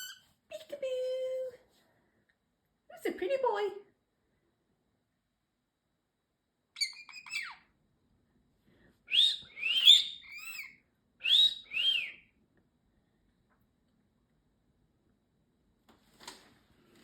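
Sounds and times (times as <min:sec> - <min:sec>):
bird chirping: 0:06.8 - 0:07.7, 0:09.1 - 0:12.3.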